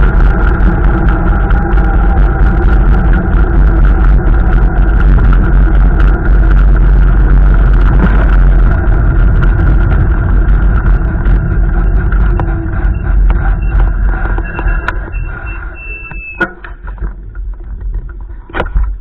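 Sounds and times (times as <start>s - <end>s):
rain: 0.0s - 12.5s
storm wind buffeting microphone: 0.0s - 19.0s.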